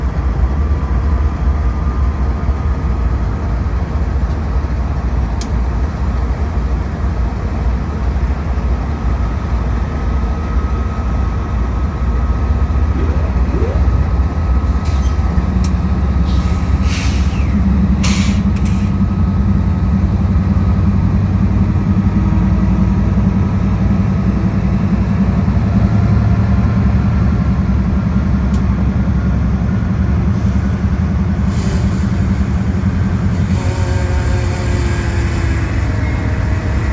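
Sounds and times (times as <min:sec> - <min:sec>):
short hisses and squeaks: 0:14.7 - 0:15.3, 0:16.2 - 0:18.4.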